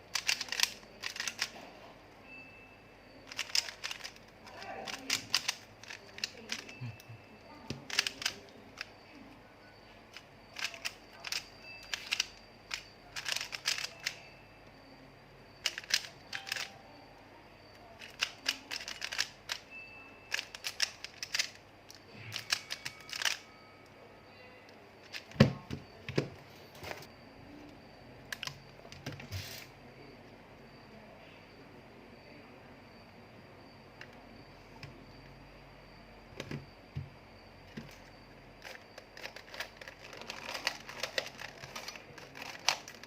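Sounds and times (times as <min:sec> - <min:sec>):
faint high tone: 0:01.6 - 0:03.3, 0:06.5 - 0:07.8, 0:16.3 - 0:17.9, 0:19.7 - 0:20.5, 0:22.1 - 0:24.9.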